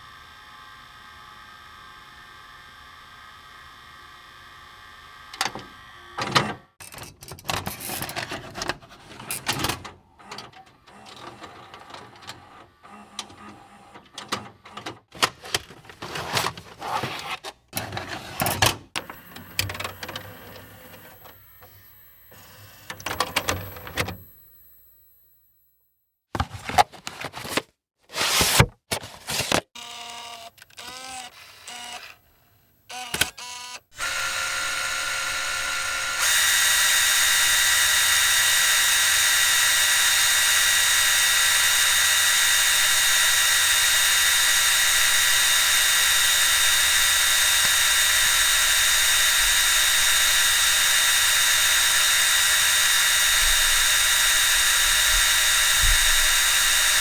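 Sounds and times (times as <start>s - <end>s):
mechanical clicks and whirs: 5.3s - 25.5s, 28.2s - 57.0s
small machine whining: 17.8s - 26.2s, 29.4s - 57.0s.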